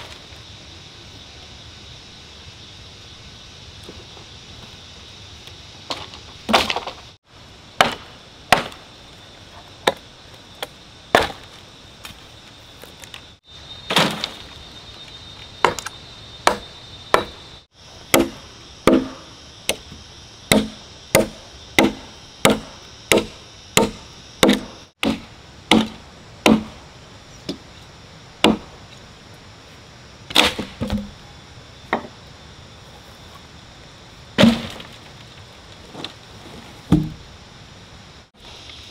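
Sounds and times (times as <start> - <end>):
blade chopping wood: 5.9 - 7.0, 7.8 - 8.8, 10.6 - 12.2, 13.9 - 14.5, 15.6 - 17.4, 18.1 - 26.8, 28.4 - 28.7, 30.3 - 31.1, 34.4 - 35.0, 36.9 - 37.2.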